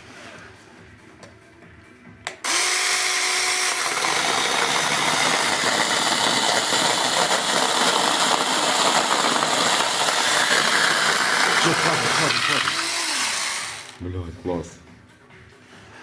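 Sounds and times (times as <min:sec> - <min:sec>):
electric chainsaw running: 0:02.4 - 0:14.0.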